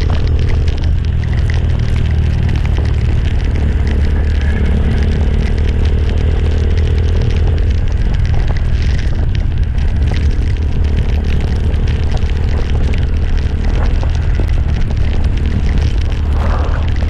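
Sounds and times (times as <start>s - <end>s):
motorcycle engine running: 0.0s - 17.0s
wind noise on microphone: 0.0s - 17.0s.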